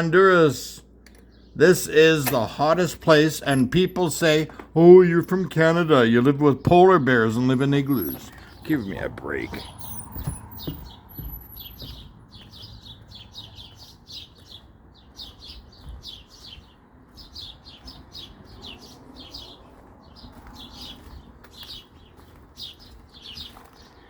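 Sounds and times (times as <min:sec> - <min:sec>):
small bird chirping: 0:07.9 - 0:24.0.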